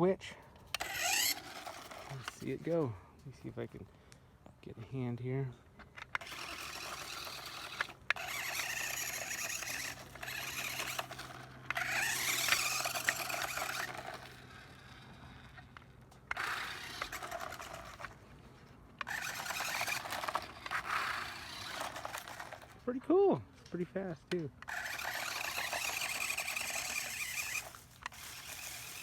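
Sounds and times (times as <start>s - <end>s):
tyres scraping over ground: 0.4s - 29.0s
toy car electric motor whining: 0.6s - 2.8s, 5.8s - 22.9s, 24.3s - 29.0s.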